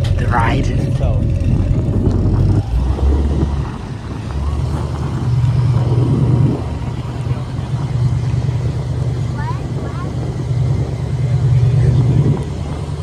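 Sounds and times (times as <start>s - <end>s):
vehicle engine rumbling: 0.0s - 13.0s.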